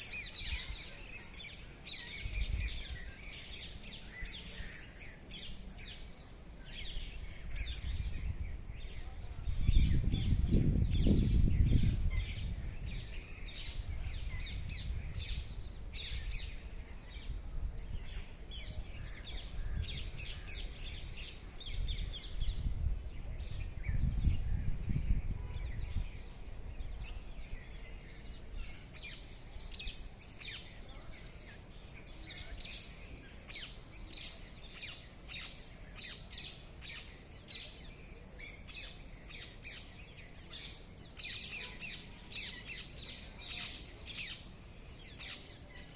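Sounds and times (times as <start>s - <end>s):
songbirds chirping: 0.0s - 45.9s.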